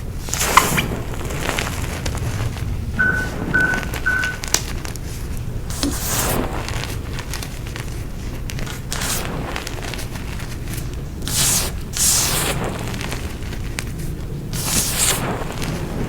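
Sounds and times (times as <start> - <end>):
short beeps: 3.0 - 4.6.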